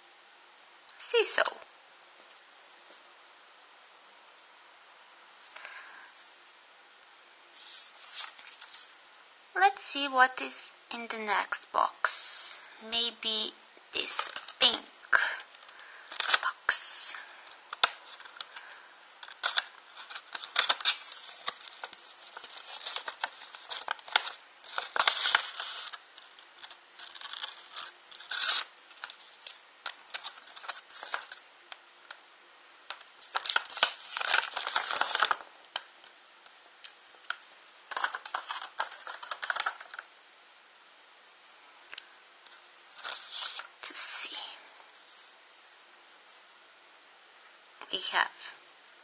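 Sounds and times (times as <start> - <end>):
packaging tearing and rustling: 14.0 - 14.6, 15.5 - 16.6, 17.7 - 31.4, 32.9 - 36.1, 36.8 - 40.1, 42.5 - 43.7.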